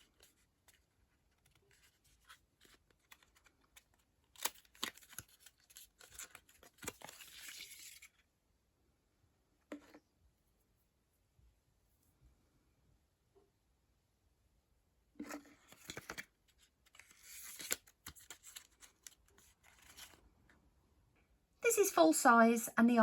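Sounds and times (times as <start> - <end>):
packaging tearing and rustling: 0.0 - 8.1, 16.9 - 20.2.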